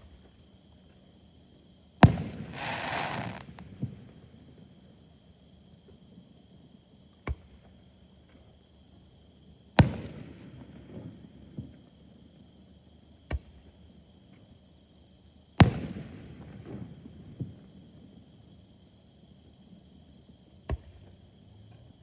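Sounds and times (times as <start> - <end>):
fireworks bangs: 2.0 - 4.0.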